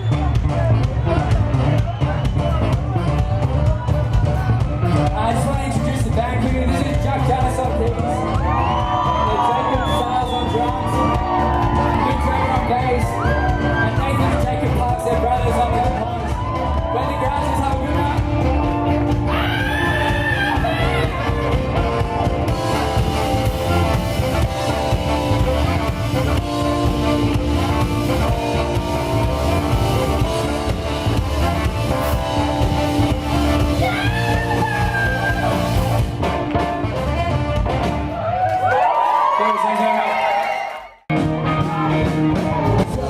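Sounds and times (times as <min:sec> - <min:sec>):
rock band playing: 0:00.0 - 0:39.1, 0:41.1 - 0:43.0.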